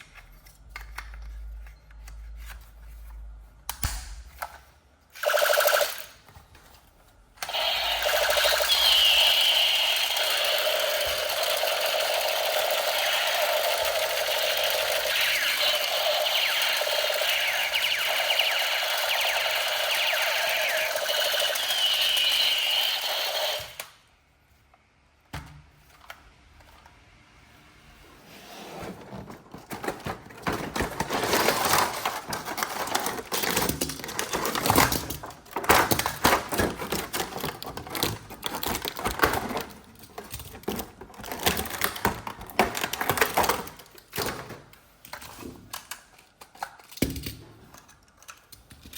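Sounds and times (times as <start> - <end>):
small electric motor whirring: 7.4 - 23.8
plastic clicks and rattles: 29.7 - 48.9.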